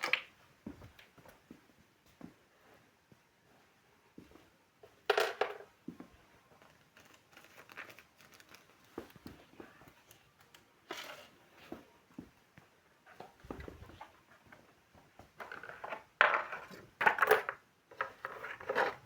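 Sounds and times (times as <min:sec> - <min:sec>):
small items clicking and knocking: 0:15.4 - 0:19.0.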